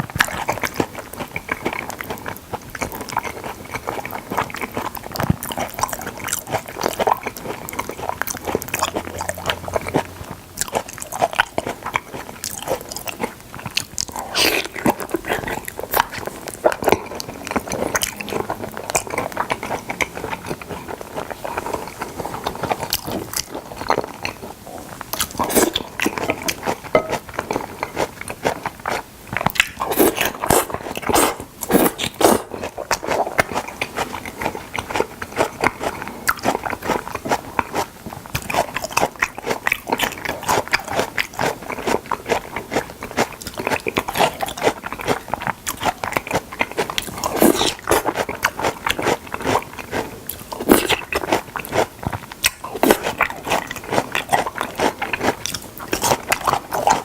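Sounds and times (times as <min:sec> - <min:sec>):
wet chewing and biting: 0:00.0 - 0:57.0.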